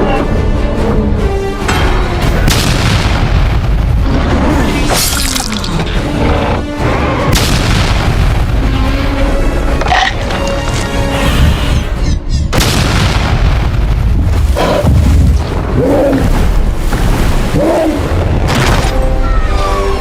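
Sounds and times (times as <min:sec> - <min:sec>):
action soundtrack music: 0:00.0 - 0:20.0
deep booming rumbles and impacts: 0:01.2 - 0:05.2, 0:05.8 - 0:10.0, 0:12.5 - 0:19.1.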